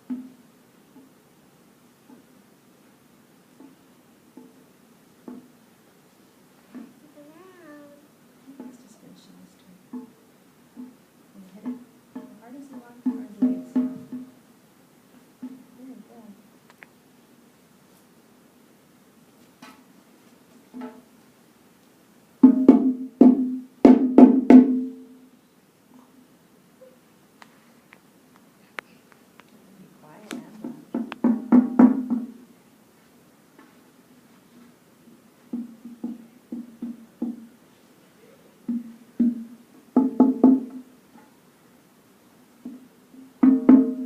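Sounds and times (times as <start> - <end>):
hand drum strikes: 11.6 - 14.4, 22.4 - 25.1, 38.6 - 40.9, 42.6 - 44.0.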